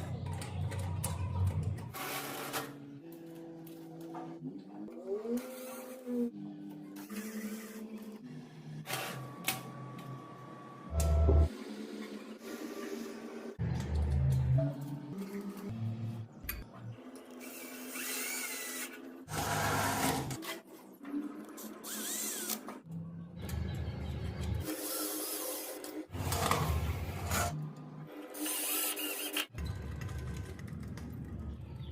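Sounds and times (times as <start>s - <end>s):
small electric motor humming: 21.8s - 22.6s.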